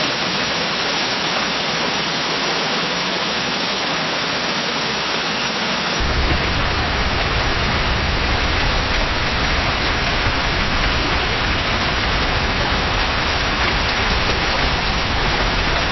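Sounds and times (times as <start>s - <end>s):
heavy rain in forest: 0.0s - 15.9s
deep rumbling undertone: 6.0s - 15.9s.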